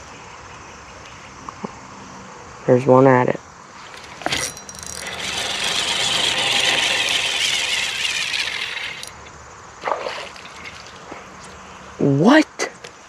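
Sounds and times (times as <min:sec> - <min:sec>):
fishing reel whirring: 0:03.8 - 0:09.2.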